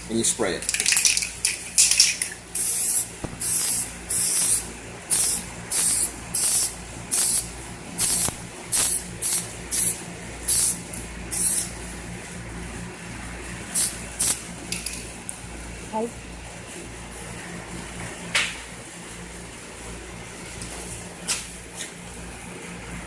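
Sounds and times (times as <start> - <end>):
aerosol can spraying: 2.5 - 11.8, 13.7 - 14.4.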